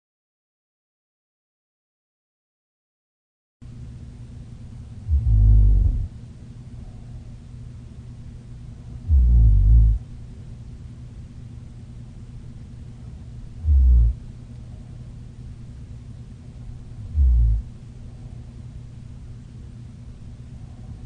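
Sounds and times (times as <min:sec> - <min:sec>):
steady low hum: 0:03.6 - 0:21.0
woman snoring: 0:05.1 - 0:06.1, 0:09.1 - 0:10.0, 0:13.6 - 0:14.2, 0:17.0 - 0:17.7.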